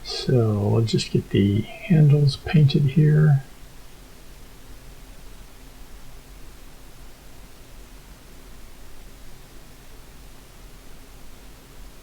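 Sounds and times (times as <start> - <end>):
steady hiss: 0.0 - 3.5.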